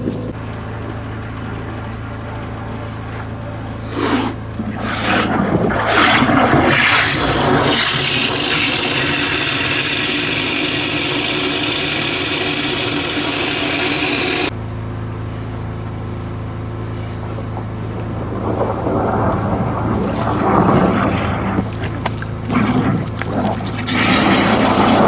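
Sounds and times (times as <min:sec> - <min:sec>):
engine running: 0:00.0 - 0:25.0
water jet hissing: 0:03.9 - 0:14.5.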